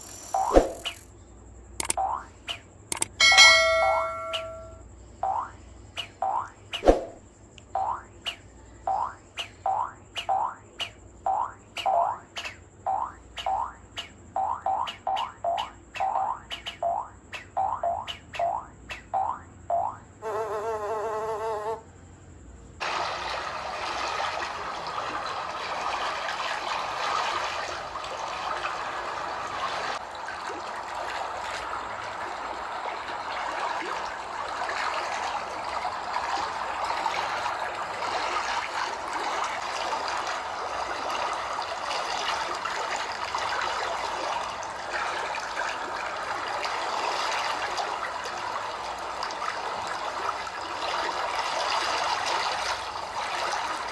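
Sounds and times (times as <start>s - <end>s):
short pitched tone: 3.2s - 4.8s
running water rushing: 22.8s - 53.9s.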